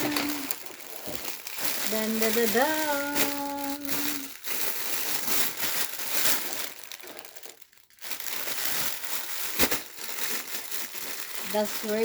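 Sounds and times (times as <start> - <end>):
person singing a held note: 0.0 - 0.5
plastic packaging crinkling: 0.0 - 12.0.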